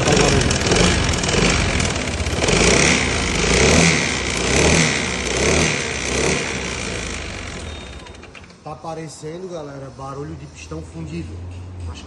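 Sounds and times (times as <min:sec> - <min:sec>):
scooter engine revving: 0:00.0 - 0:08.6.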